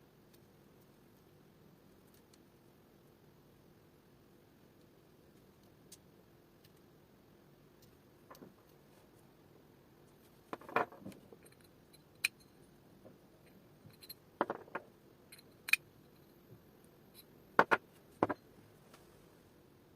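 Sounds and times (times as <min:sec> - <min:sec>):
small hard parts clicking and knocking: 0:10.1 - 0:16.3, 0:17.2 - 0:18.4.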